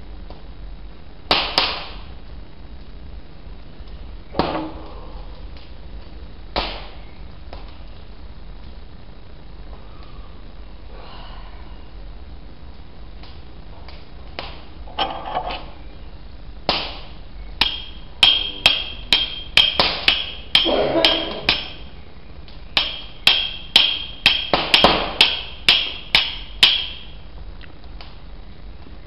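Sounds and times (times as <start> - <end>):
steel striker hitting flint: 17.6 - 21.8, 22.8 - 27.1.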